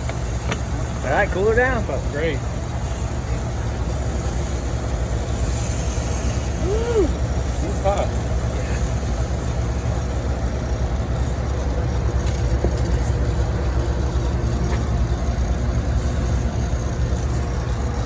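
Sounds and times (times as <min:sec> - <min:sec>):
hiss: 0:00.0 - 0:11.5, 0:15.7 - 0:18.0
machinery rumbling: 0:00.0 - 0:18.0.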